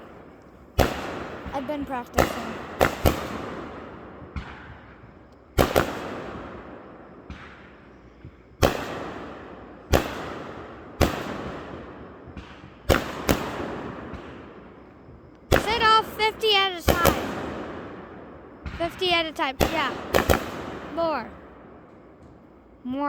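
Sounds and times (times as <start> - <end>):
fireworks bangs with rumbling echo: 0.0 - 22.8.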